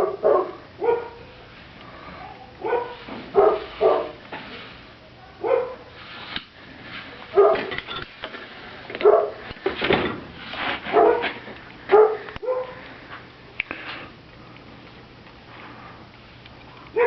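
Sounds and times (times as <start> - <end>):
dog barking: 0.0 - 1.2, 2.6 - 4.2, 5.4 - 5.9, 7.3 - 7.7, 9.0 - 9.4, 10.9 - 12.8.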